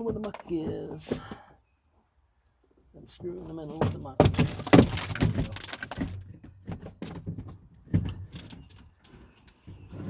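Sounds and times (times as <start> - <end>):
plastic panels knocking and scraping: 0.0 - 1.2, 3.2 - 9.0.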